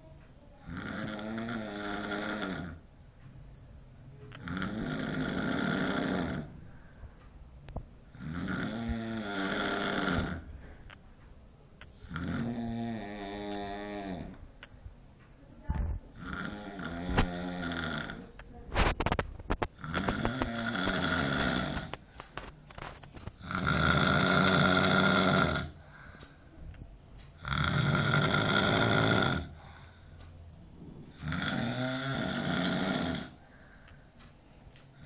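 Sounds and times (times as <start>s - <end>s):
person snoring: 0.6s - 2.8s, 4.4s - 6.6s, 8.1s - 10.5s, 12.0s - 14.4s, 16.2s - 19.0s, 19.8s - 26.1s, 27.4s - 30.0s, 31.0s - 33.6s.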